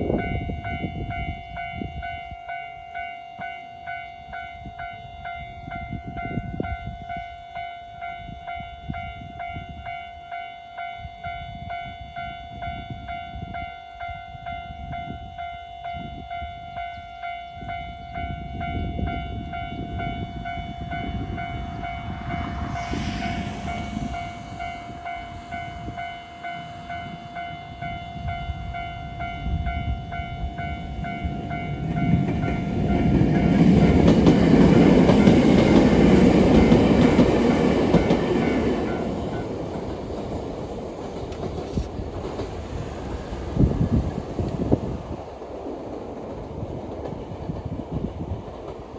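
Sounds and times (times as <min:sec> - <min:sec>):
train rumble: 0:11.3 - 0:48.9
hissing burst: 0:20.9 - 0:27.7.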